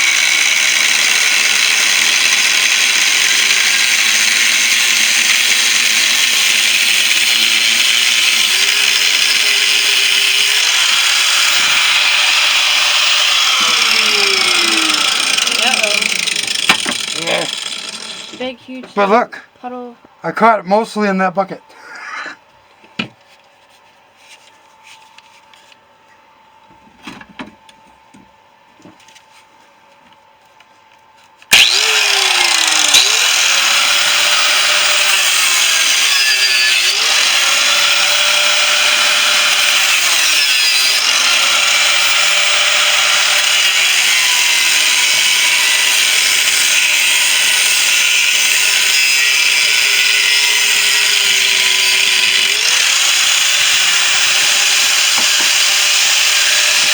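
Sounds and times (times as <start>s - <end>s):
power tool cutting steel: 0.0s - 18.5s, 31.5s - 56.9s.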